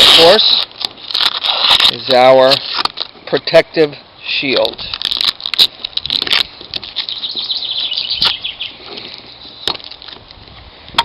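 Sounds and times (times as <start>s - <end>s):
plastic film peeling: 0.0s - 3.2s, 4.7s - 7.5s, 8.1s - 10.4s.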